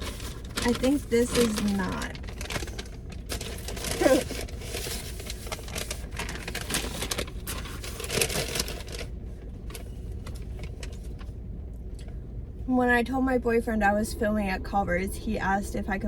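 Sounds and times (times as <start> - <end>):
paper bags rustling and crinkling: 0.0 - 11.3.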